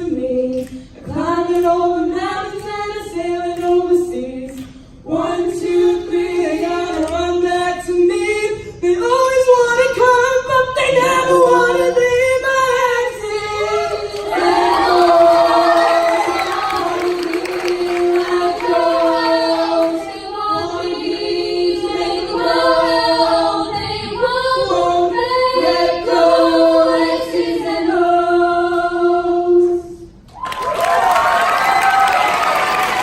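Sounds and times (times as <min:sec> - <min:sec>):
women singing in harmony: 0:00.0 - 0:30.2
audience applause: 0:14.2 - 0:18.8, 0:30.4 - 0:33.0.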